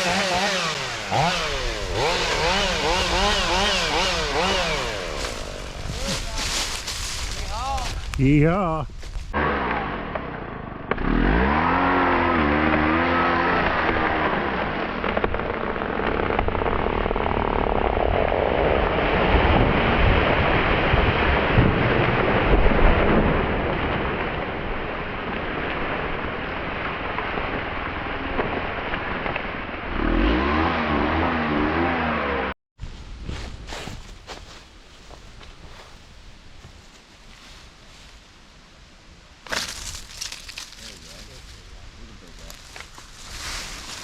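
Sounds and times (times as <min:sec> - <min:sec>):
chainsaw cutting wood: 0:00.0 - 0:07.2, 0:09.4 - 0:23.4, 0:26.8 - 0:32.5.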